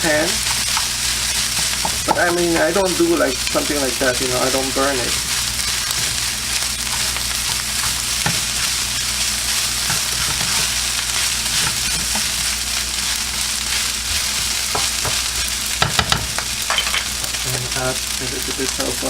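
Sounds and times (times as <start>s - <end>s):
rice sizzling in a hot pan: 0.0s - 19.0s
stirring scrapes and taps: 0.4s - 2.8s, 5.1s - 16.4s.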